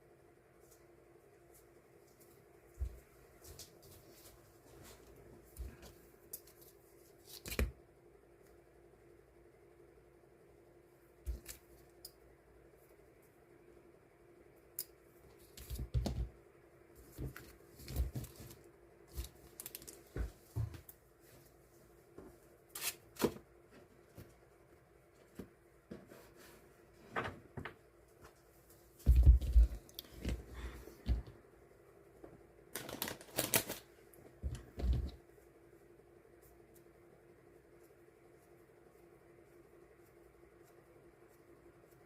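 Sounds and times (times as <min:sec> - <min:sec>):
steady low hum: 0:23.4 - 0:32.7.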